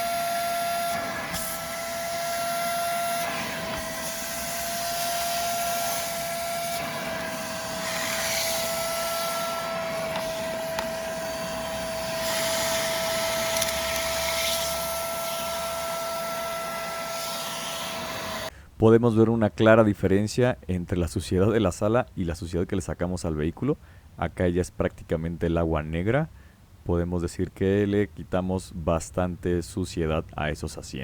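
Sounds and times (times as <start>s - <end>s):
upholstery cleaner motor whine: 0.0s - 18.5s.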